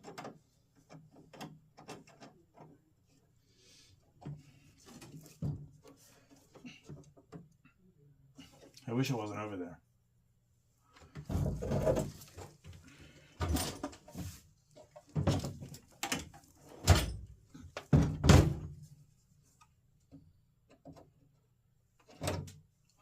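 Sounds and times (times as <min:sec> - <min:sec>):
objects thunking and clattering: 0:04.2 - 0:07.6, 0:11.0 - 0:18.9.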